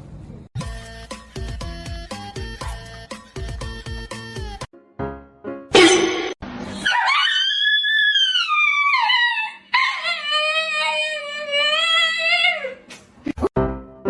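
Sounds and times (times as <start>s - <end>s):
dog howling: 6.8s - 12.8s.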